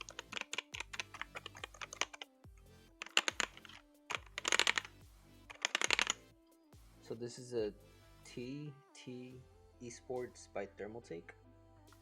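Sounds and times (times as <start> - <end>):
fast typing on keyboard: 0.0 - 2.3, 3.0 - 6.2
background music: 0.0 - 12.0.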